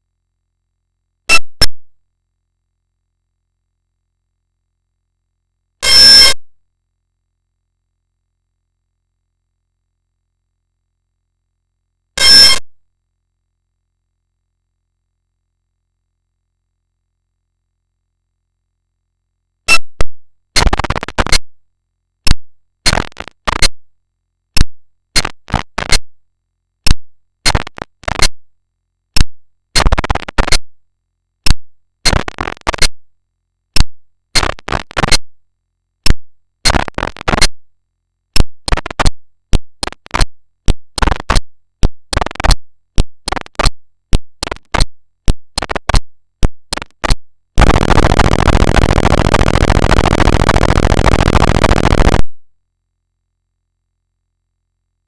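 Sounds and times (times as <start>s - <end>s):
harsh distorted din: 46.8s - 52.3s
distorted alarm bursts: 47.6s - 52.2s.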